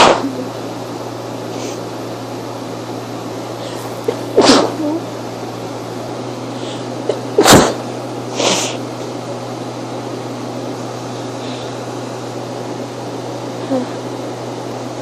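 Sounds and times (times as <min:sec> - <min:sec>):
person sneezing: 0:03.6 - 0:04.9, 0:06.6 - 0:08.8.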